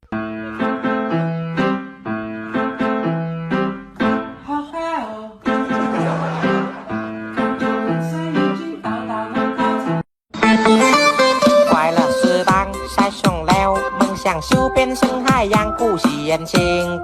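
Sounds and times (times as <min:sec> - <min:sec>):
plucked string melody: 0:10.4 - 0:12.8
held bass line: 0:10.4 - 0:17.0.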